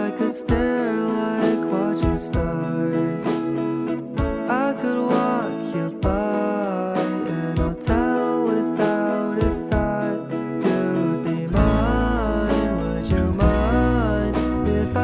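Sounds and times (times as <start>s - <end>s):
acoustic guitar: 0.0s - 15.0s
person singing: 0.0s - 15.0s
deep bass: 11.5s - 15.0s.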